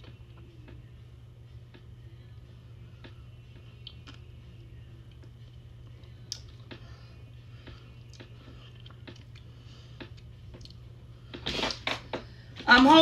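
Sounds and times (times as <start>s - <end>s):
steady low hum: 0.0s - 13.0s
small clicks and chewing: 5.1s - 6.8s, 8.0s - 10.8s.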